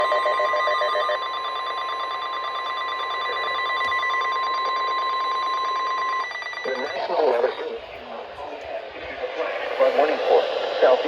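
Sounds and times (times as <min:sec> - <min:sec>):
steady high alert tone: 0:00.0 - 0:07.8
rapidly pulsing signal: 0:00.0 - 0:11.0.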